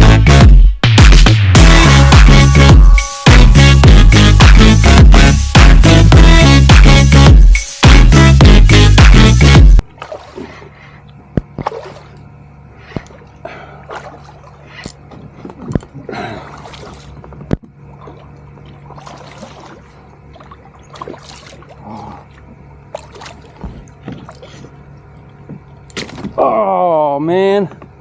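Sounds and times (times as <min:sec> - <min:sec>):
water splashing and trickling: 0:09.9 - 0:10.9, 0:11.5 - 0:12.3, 0:12.9 - 0:26.4
sharp knocks on kayak: 0:23.6 - 0:24.4, 0:25.5 - 0:26.4.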